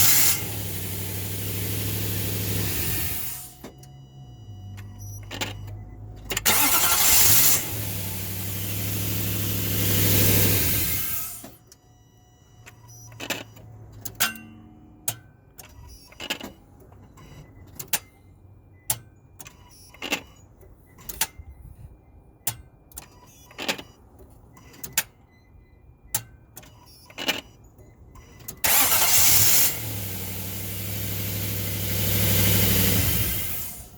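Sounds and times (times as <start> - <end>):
car engine starting and running: 0.0 - 11.6, 28.4 - 33.9.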